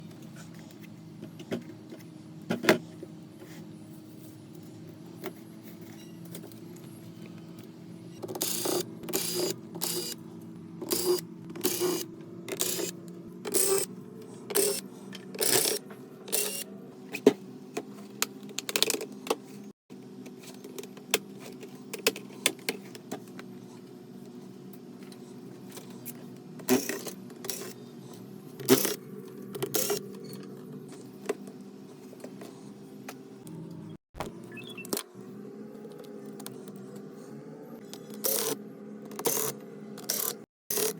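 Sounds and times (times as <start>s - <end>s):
tools and plastic parts clicking: 10.8s - 13.9s, 18.2s - 19.4s.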